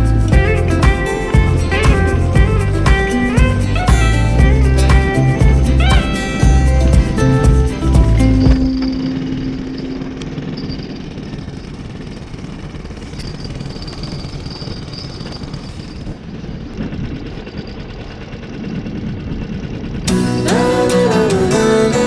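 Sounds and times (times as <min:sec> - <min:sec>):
boat motor rumbling: 0:00.0 - 0:13.3.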